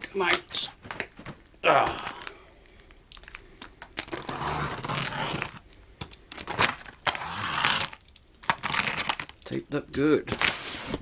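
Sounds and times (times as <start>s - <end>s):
cardboard box being torn open: 4.0s - 5.6s, 6.4s - 9.3s.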